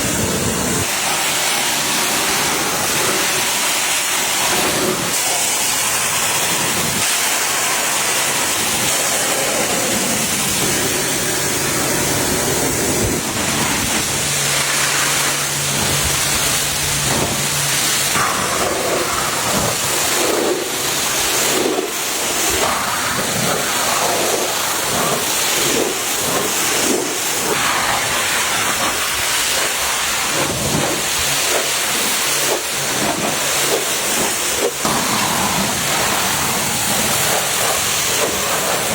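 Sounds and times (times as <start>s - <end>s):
hissing spray: 0.0s - 38.9s.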